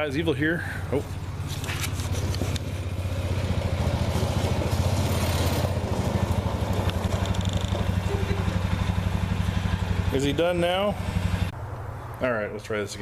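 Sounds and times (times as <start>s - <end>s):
people talking: 0.0s - 1.1s, 8.0s - 8.6s, 10.1s - 11.0s, 12.2s - 13.0s
engine running: 0.0s - 12.2s.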